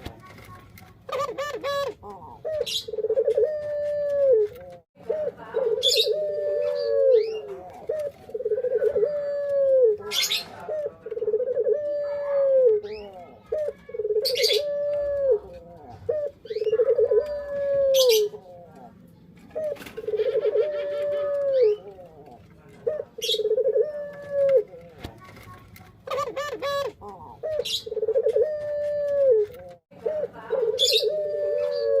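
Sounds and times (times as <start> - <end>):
dove cooing: 1.1 - 32.0.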